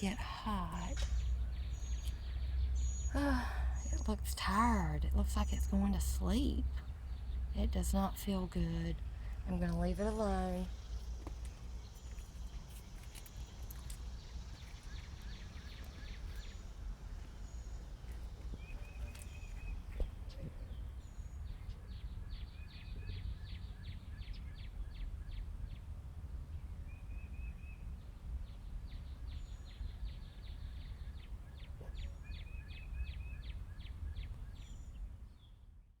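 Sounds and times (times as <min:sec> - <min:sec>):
steady low rumble: 0:00.0 - 0:21.2
small birds trilling: 0:00.0 - 0:25.8, 0:27.6 - 0:35.6.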